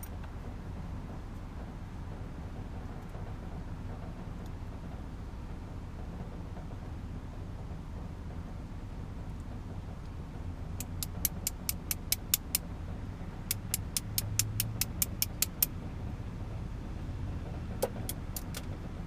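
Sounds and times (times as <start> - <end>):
light metallic clicks: 10.8 - 12.6, 13.5 - 15.7.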